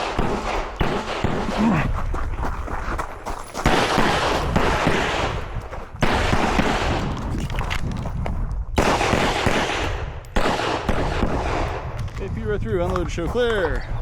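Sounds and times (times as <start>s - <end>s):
pistol shots echoing: 0.0s - 1.9s, 3.6s - 7.2s, 8.8s - 12.2s.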